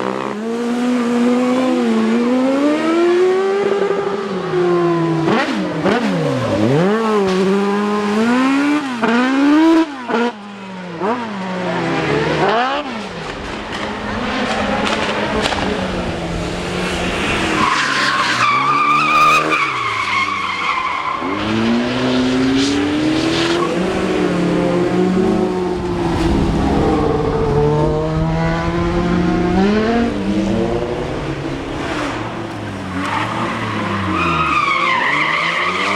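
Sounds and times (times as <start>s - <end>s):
rally car engine revving: 0.0s - 35.9s
tyre squeal: 17.2s - 21.5s, 31.8s - 35.9s.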